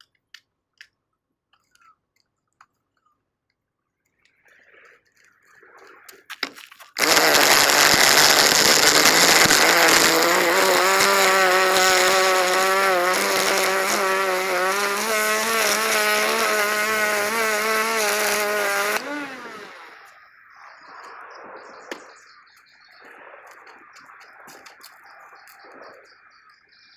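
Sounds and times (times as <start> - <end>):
string trimmer engine running: 7.0 - 20.1.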